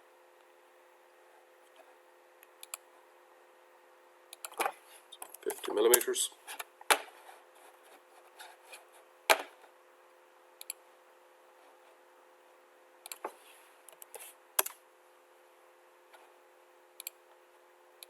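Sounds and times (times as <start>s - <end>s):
faint electrical hum: 0.0s - 18.0s
computer mouse clicks: 2.5s - 2.9s, 4.3s - 6.7s, 10.6s - 10.8s, 13.0s - 14.8s, 17.0s - 17.2s.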